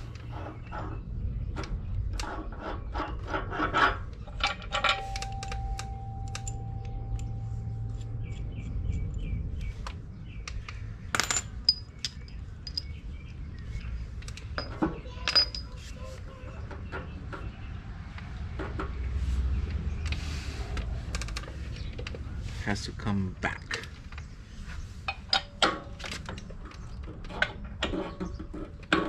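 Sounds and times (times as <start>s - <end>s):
metal parts clinking and knocking: 3.7s - 7.4s, 10.4s - 15.8s
struck metal part ringing: 4.4s - 8.5s.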